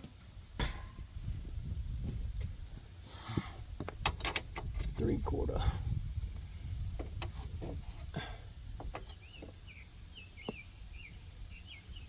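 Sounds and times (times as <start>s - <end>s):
low steady rumble: 0.0s - 12.0s
small bird chirping: 8.7s - 12.0s.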